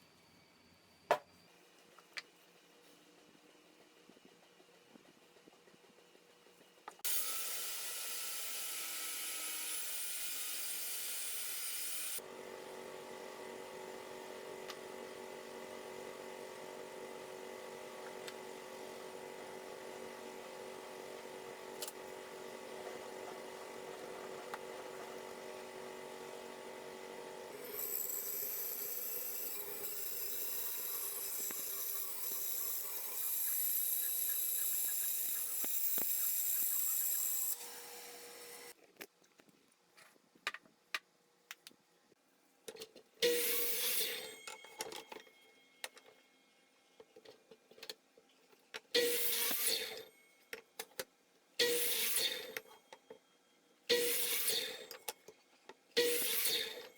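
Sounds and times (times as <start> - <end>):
power tools on wood: 7.0 - 38.8, 49.0 - 50.1, 51.6 - 52.7, 53.9 - 55.0, 56.0 - 56.9.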